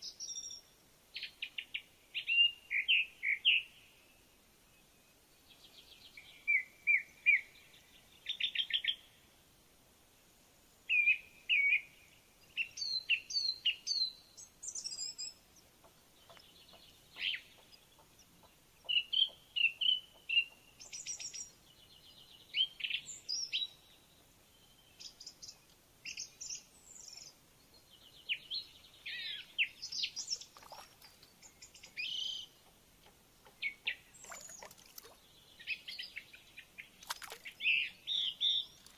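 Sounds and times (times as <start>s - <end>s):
songbirds chirping and trilling: 10.1s - 38.9s.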